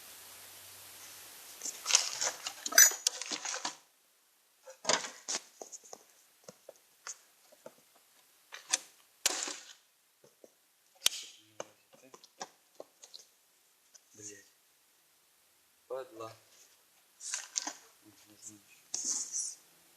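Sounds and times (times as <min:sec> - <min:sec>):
metal tools clinking and rattling: 0:02.0 - 0:03.8.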